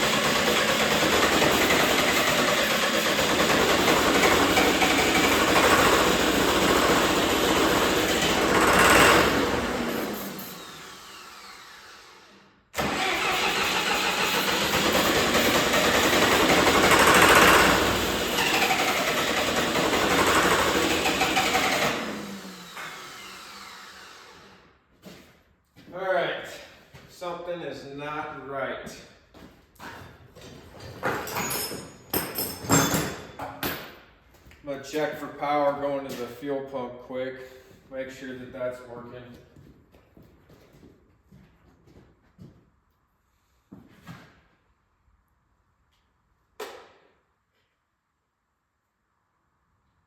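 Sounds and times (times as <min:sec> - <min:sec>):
diesel engine cranked by starter: 0:00.0 - 0:24.4.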